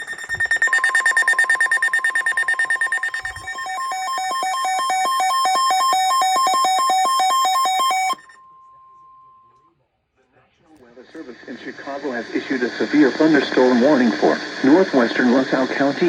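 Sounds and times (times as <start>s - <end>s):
alternating two-tone electronic alert: 0.0s - 8.4s
fast pulsing electronic beep: 0.0s - 8.4s.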